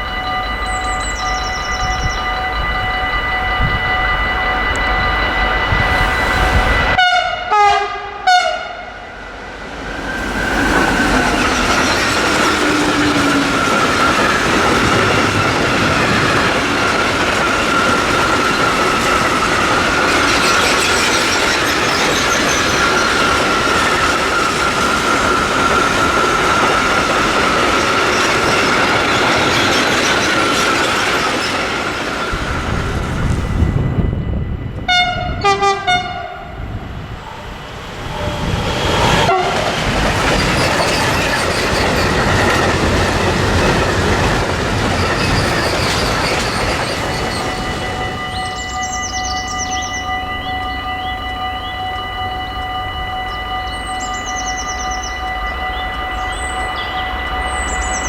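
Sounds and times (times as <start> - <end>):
thin high tone: 0.0 - 7.0, 45.0 - 58.0
train horn: 0.0 - 9.5, 34.8 - 38.5, 39.1 - 39.9, 46.6 - 58.0
train wheels clattering on rail: 9.9 - 34.1, 37.8 - 48.4.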